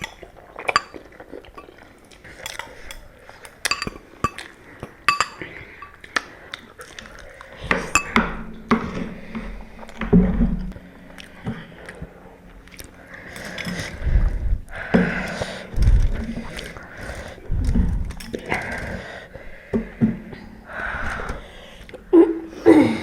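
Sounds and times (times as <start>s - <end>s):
utensils clinking against bowls: 0.0s - 6.3s, 7.6s - 9.5s, 13.2s - 14.1s.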